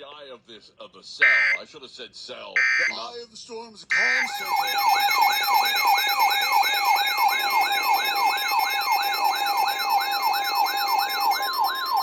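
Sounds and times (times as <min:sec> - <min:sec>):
electronic siren alert tone: 0:01.2 - 0:01.6, 0:02.6 - 0:03.0, 0:03.9 - 0:12.0.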